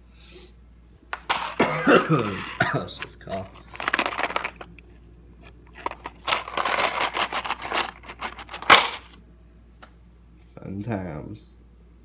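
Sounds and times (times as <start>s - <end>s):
cable scraping and crinkling: 1.1s - 9.2s.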